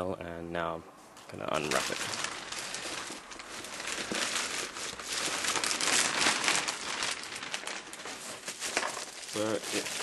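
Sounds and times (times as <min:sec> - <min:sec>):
mail packaging crinkled and torn: 0:01.6 - 0:10.0.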